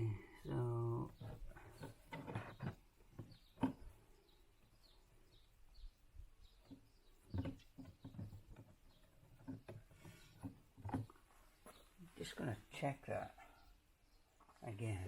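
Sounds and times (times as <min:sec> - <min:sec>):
faint bird chirps: 0:00.0 - 0:15.0.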